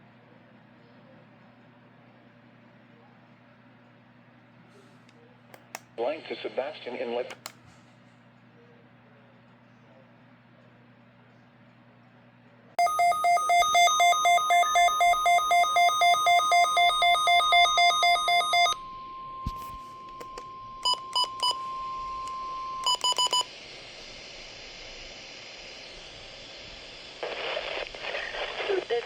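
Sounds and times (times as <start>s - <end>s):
rapid alarm beeps: 12.8s - 23.5s
short beeps: 12.8s - 23.5s
steady warning alarm tone: 12.8s - 23.6s.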